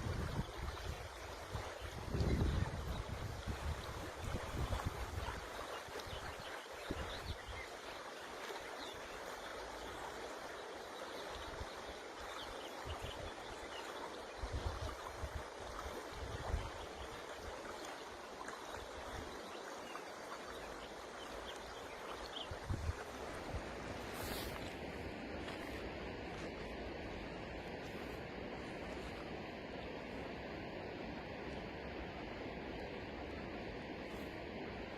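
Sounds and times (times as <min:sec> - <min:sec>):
wind rumble on microphone: 0:00.0 - 0:07.6, 0:14.4 - 0:17.6, 0:22.3 - 0:30.2
river water running: 0:00.0 - 0:34.9.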